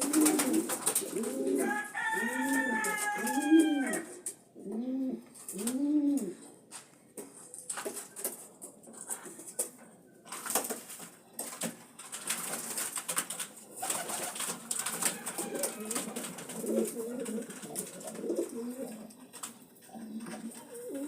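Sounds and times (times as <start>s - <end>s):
pigeons cooing: 0.0s - 6.6s, 13.6s - 21.0s
clicks and rustling: 5.3s - 21.0s.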